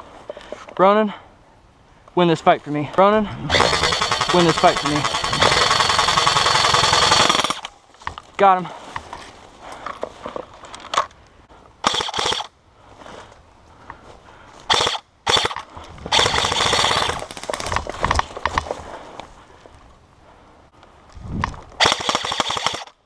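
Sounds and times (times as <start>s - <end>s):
airsoft guns firing bursts: 3.5s - 7.7s, 11.8s - 12.5s, 14.7s - 17.9s, 21.8s - 23.0s.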